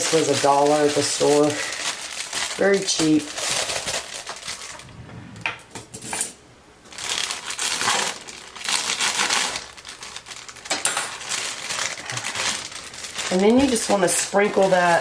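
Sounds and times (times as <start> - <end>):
plastic bag crinkling: 0.0 - 5.0, 6.8 - 15.0.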